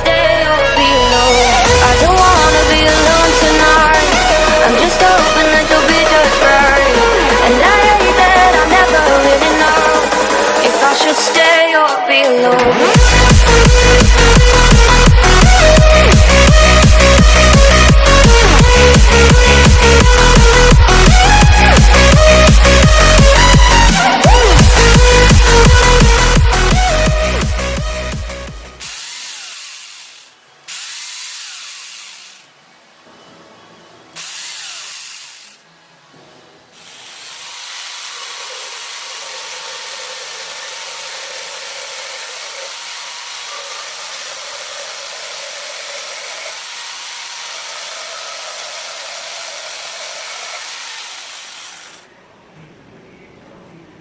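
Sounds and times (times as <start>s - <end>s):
power tool chainsaw whining: 1.0s - 32.6s, 34.1s - 35.7s, 36.8s - 52.0s.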